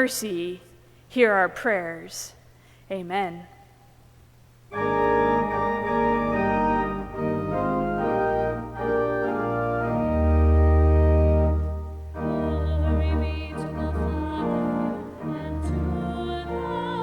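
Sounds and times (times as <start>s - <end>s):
deep organ pedal bass notes: 4.7s - 16.9s
organ playing sustained chords: 4.7s - 17.0s.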